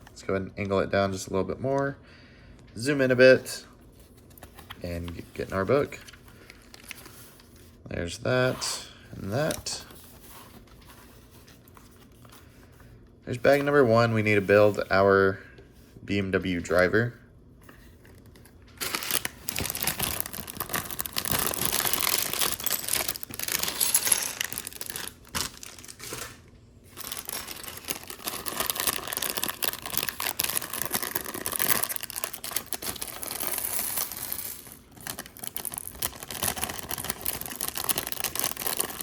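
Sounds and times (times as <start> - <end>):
plastic bags crinkling: 4.4 - 7.1, 18.0 - 39.0
plastic bags tearing open: 18.8 - 39.0.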